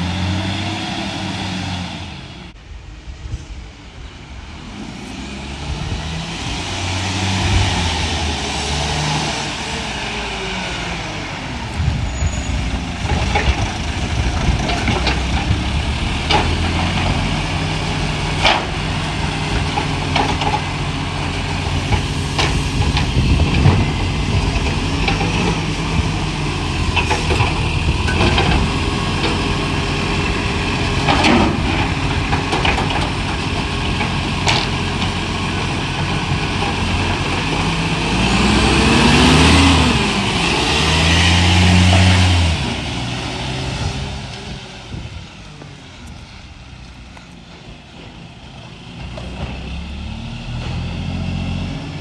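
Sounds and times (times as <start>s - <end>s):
diesel truck engine running: 0.0s - 52.0s
knocks and clanks: 12.4s - 37.9s.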